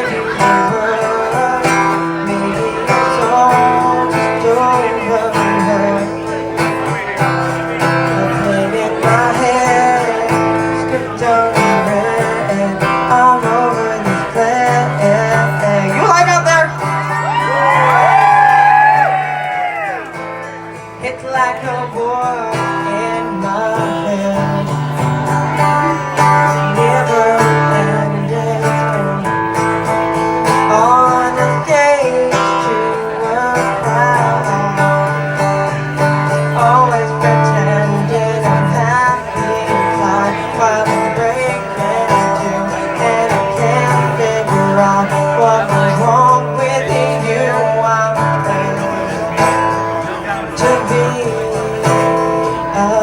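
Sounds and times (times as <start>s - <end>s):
acoustic guitar playing: 0.0s - 53.0s
person singing: 0.0s - 53.0s
audience whooping: 17.0s - 20.1s.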